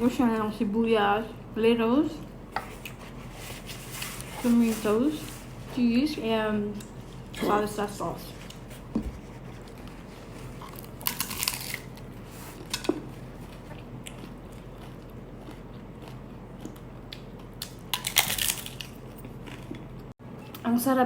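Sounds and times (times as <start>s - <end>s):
crunching bites into taco shell: 10.6s - 12.0s, 14.8s - 19.8s.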